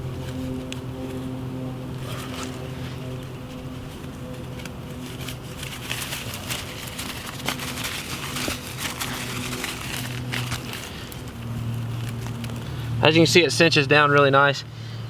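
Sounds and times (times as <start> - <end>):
steady low hum: 0.0 - 15.0
tent flap rustling and clicking: 1.9 - 12.7.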